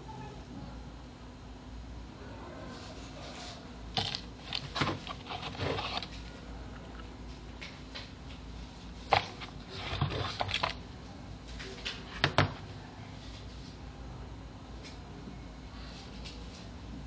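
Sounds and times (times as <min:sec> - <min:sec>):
packaging clicks and knocks: 0:04.0 - 0:06.1, 0:09.1 - 0:10.8.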